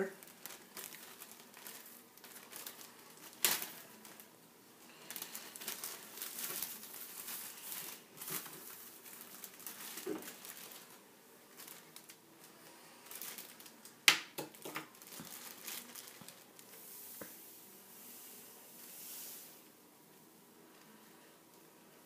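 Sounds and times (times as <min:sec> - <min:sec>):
sugar rustling in measuring cup: 0:14.6 - 0:19.8.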